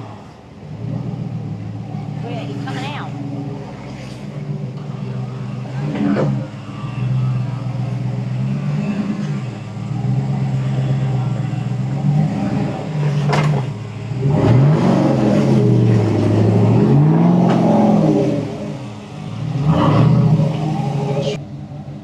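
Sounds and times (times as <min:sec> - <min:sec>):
truck engine revving: 0:00.0 - 0:22.0.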